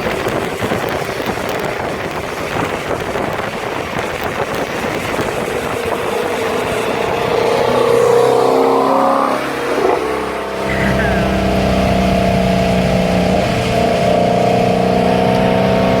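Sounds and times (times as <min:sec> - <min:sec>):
road noise: 0:00.0 - 0:16.0
engine exhaust revving up: 0:04.3 - 0:16.0.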